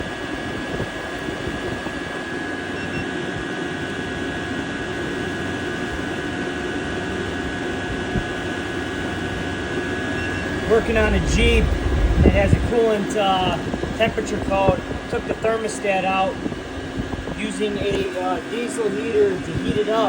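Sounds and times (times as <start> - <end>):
air heater blower roar: 0.0 - 20.0
thin high whine: 7.3 - 20.0.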